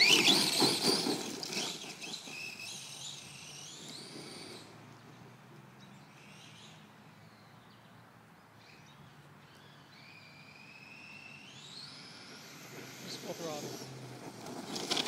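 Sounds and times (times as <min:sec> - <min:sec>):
distant rc truck motor whine: 0:00.0 - 0:07.6, 0:08.6 - 0:15.0.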